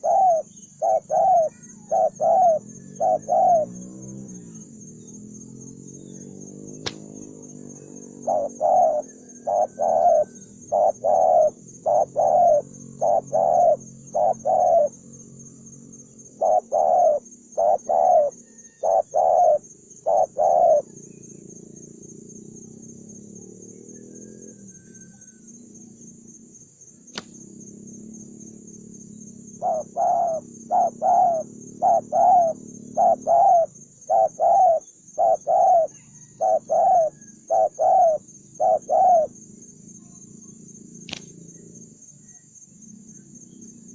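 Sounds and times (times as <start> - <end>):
dove cooing: 0.0 - 15.1, 16.2 - 21.8, 29.3 - 39.4
sharp click: 6.8 - 7.1, 27.2 - 27.4, 41.1 - 41.3.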